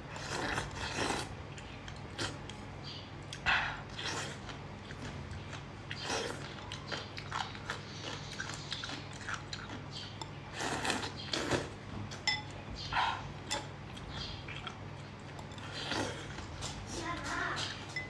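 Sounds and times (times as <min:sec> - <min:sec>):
biting and crunching food: 0:00.0 - 0:11.8.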